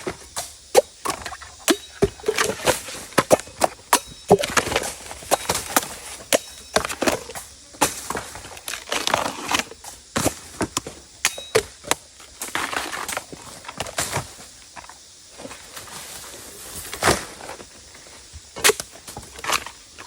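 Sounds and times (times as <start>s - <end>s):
blade chopping bamboo shoots: 0.4s - 9.7s.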